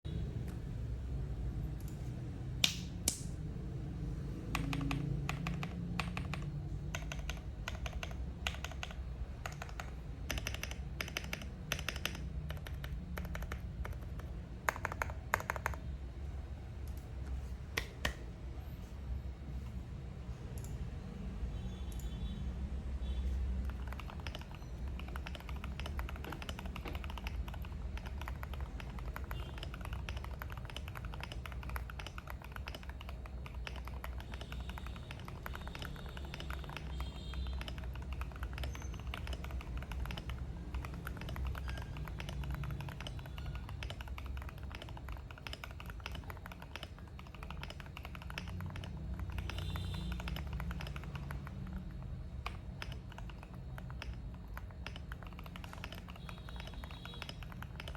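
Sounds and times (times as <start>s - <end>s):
fast mechanical keyboard typing: 4.2s - 16.0s, 23.5s - 57.9s.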